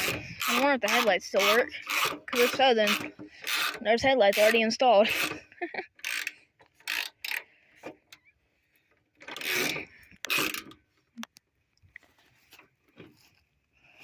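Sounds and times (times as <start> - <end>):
ratchet wrench ratcheting: 0.0 - 7.5, 9.2 - 10.8.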